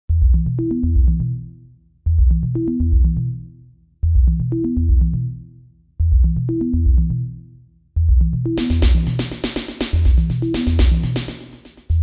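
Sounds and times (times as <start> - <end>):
electronic music with drum machine: 8.0 - 12.0.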